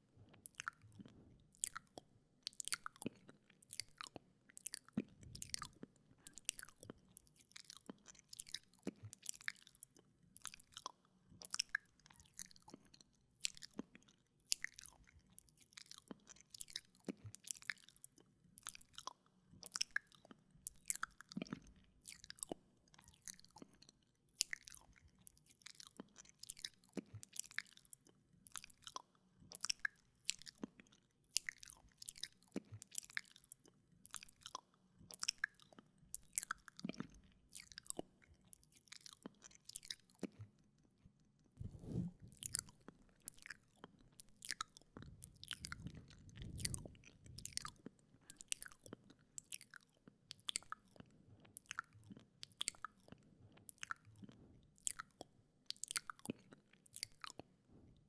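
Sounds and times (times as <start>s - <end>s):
wet mouth clicks and lip smacks: 41.7s - 57.5s.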